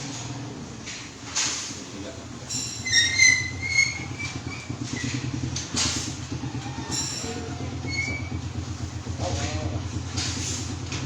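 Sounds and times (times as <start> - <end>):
short high squeaks: 2.5 - 5.2, 6.8 - 8.4
small engine running: 2.8 - 11.0.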